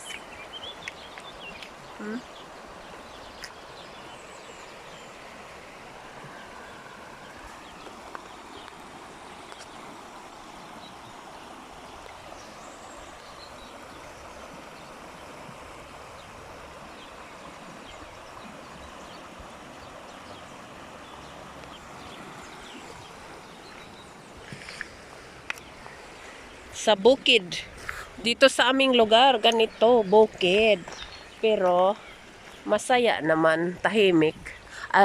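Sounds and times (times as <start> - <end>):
river water flowing: 0.0 - 35.0.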